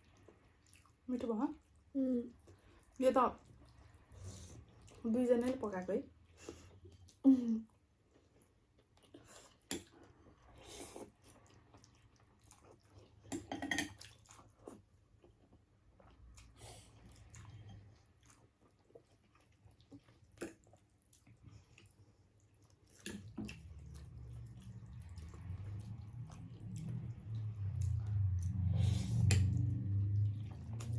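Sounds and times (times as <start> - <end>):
chewing and slurping: 0.0 - 1.0, 8.0 - 30.9
faint low hum: 0.0 - 30.9.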